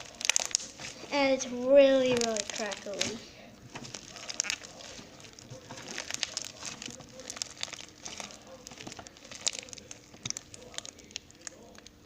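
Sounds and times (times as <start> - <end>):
slime crackling and popping: 0.0 - 12.0.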